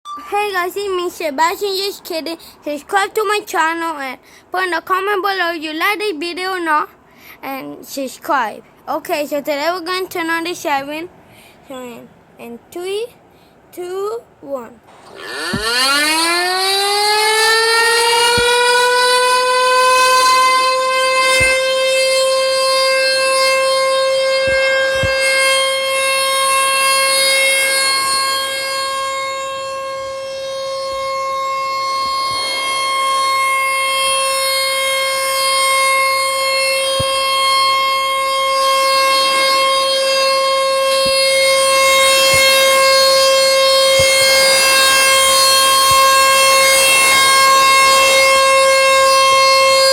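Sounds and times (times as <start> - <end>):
tornado siren wailing: 14.9 - 49.9.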